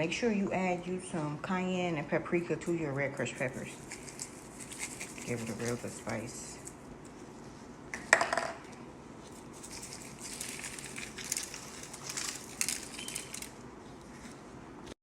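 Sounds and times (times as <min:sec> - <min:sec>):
scratchy rustling and shaking: 0:03.1 - 0:07.7, 0:09.2 - 0:14.5.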